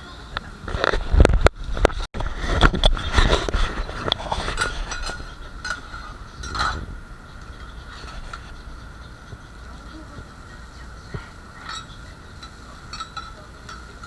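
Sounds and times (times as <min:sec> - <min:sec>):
metal spatulas scraping on griddle: 0:02.4 - 0:06.9.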